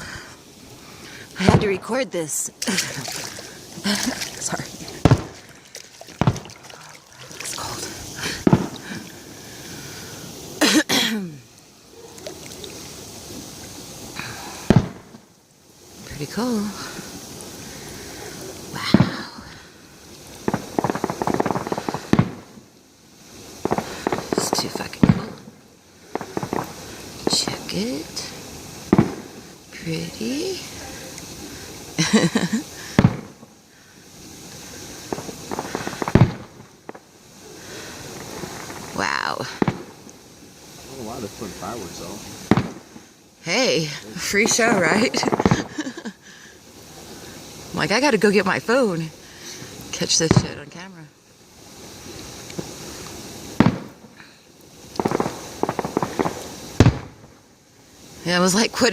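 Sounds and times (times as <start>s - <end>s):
steady hiss: 0.0s - 58.9s
firework bangs: 1.3s - 11.0s, 14.2s - 15.3s, 16.8s - 19.5s, 20.3s - 22.7s, 23.3s - 48.4s, 50.0s - 50.6s, 52.6s - 57.4s
person coughing: 10.6s - 11.4s.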